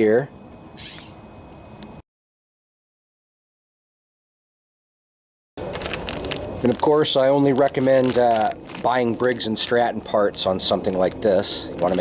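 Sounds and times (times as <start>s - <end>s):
crackly rustling noise: 5.6s - 12.0s.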